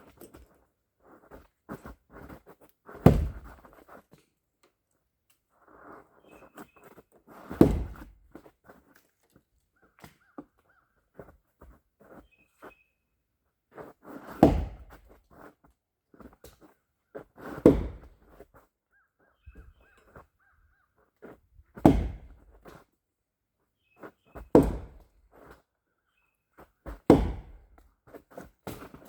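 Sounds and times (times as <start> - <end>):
axe chopping into wood: 3.0 - 3.6, 7.5 - 8.1, 14.3 - 15.1, 17.6 - 18.2, 21.8 - 22.6, 24.5 - 25.0, 26.9 - 27.8, 28.6 - 29.0.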